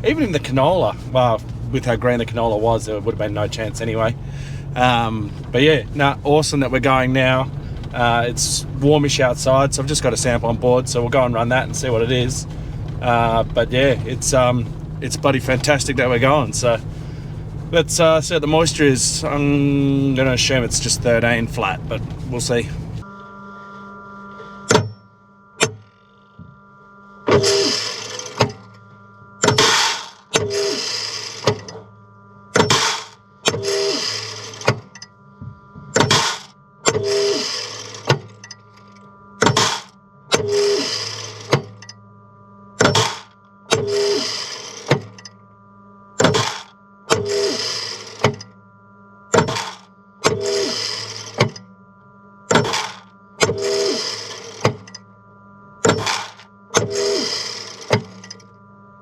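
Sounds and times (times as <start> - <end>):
steady machine hum: 0.0 - 59.0
short rasping rattle: 29.4 - 31.8, 32.6 - 35.0, 42.8 - 45.3, 49.4 - 51.6, 52.5 - 55.0, 55.9 - 58.4.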